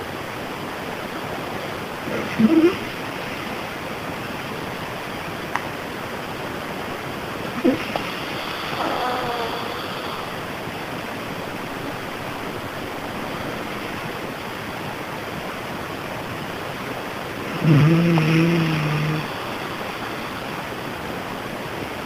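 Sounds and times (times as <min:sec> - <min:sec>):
sleeping person moaning: 0:02.2 - 0:02.9, 0:07.6 - 0:10.4, 0:17.5 - 0:20.4
steady rushing noise: 0:09.4 - 0:22.0.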